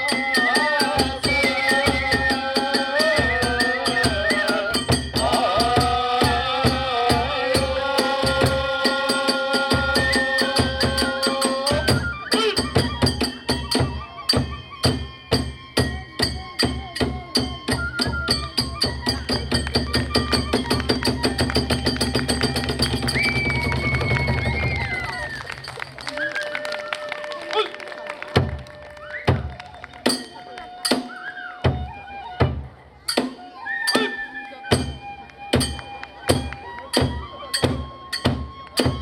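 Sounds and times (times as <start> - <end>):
hand cymbals: 0.0 - 24.2, 33.1 - 39.0
drums beating: 0.0 - 26.0, 28.1 - 39.0
bamboo flute playing held notes: 0.0 - 39.0.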